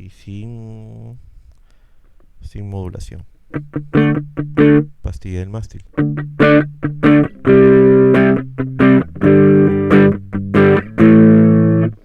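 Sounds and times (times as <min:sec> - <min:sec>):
overdriven electric guitar chords: 0:03.5 - 0:05.0, 0:05.9 - 0:12.0.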